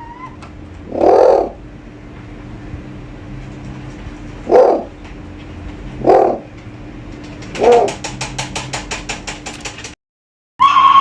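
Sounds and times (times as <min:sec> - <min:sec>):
owl hooting: 0:00.9 - 0:01.6.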